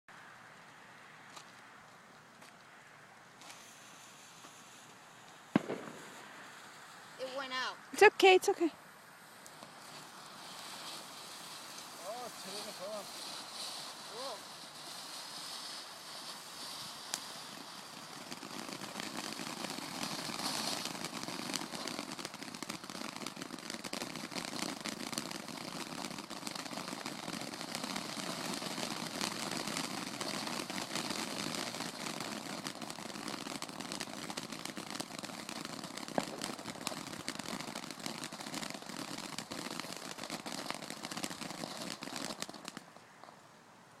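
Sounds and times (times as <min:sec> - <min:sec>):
fireworks crackling: 0:00.1 - 0:44.0
sharp firework pop: 0:05.5 - 0:06.5, 0:36.0 - 0:42.9.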